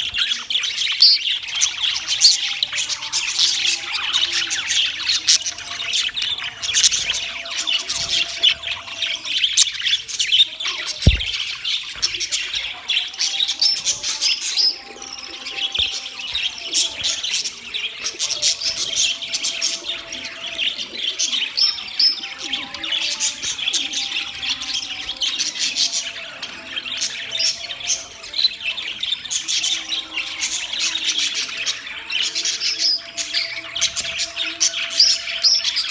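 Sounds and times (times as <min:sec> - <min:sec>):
budgerigars chattering: 0:00.0 - 0:35.9
low thump: 0:11.1 - 0:11.4.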